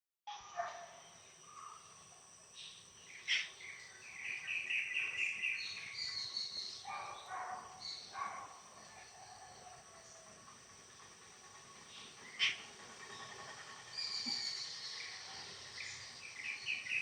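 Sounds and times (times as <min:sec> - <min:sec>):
high insect drone: 0:00.4 - 0:17.0
birds calling: 0:03.0 - 0:08.6, 0:11.8 - 0:17.0.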